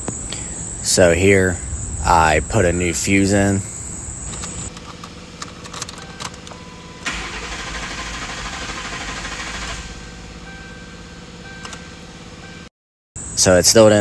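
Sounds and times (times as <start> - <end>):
car engine cranking by starter: 3.4 - 12.6.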